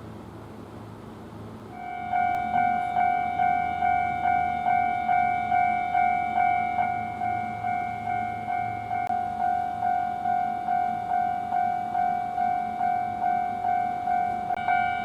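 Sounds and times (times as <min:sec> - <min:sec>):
level crossing warning bell: 0:01.7 - 0:15.0.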